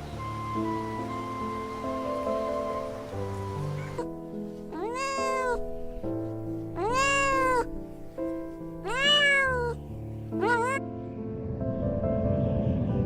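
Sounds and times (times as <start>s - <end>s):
soft background music: 0.0s - 13.0s
cat meowing: 3.4s - 6.0s, 6.7s - 7.9s, 8.8s - 10.8s.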